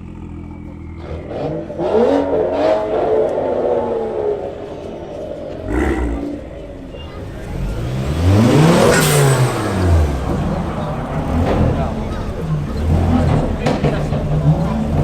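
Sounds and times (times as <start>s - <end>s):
vehicle engine revving: 0.0s - 15.0s.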